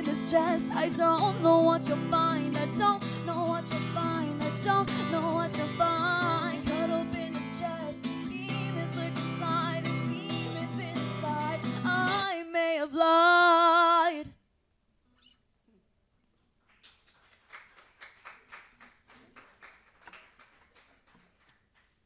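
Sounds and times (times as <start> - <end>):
strummed acoustic guitar: 0.0 - 12.3
woman singing: 0.0 - 14.4.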